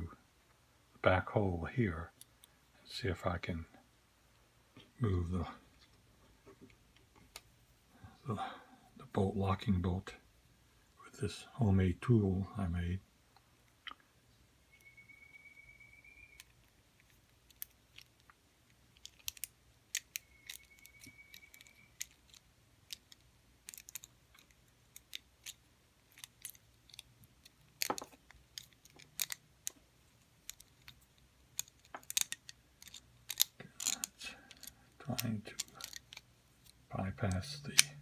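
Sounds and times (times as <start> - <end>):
metal pick clicking in lock: 19.0 - 29.8, 31.6 - 36.2.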